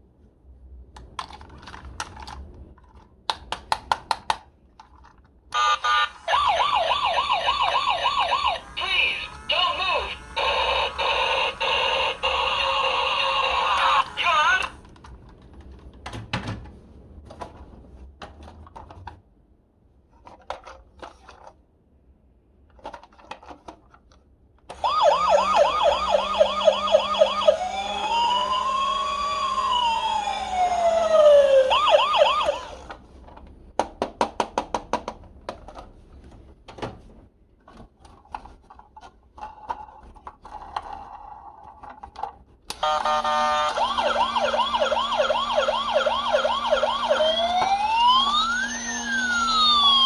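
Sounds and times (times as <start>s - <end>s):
toy electronic siren: 5.6s - 14.7s, 24.8s - 32.9s, 42.8s - 50.0s.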